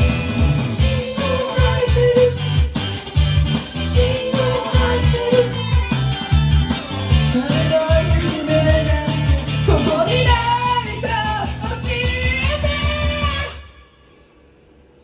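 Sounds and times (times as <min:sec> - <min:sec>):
bass and drum beat: 0:00.0 - 0:13.6
rock-pop backing track: 0:00.0 - 0:13.6
guitar: 0:00.0 - 0:14.0
man singing: 0:04.0 - 0:05.8, 0:07.1 - 0:13.7.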